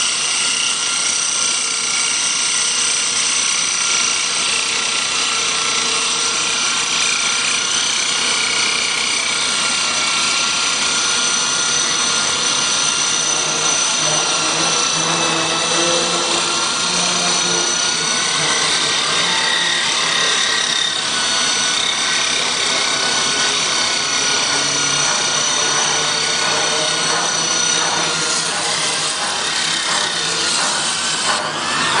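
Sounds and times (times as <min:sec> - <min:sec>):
power drill grinding: 0:00.0 - 0:32.0.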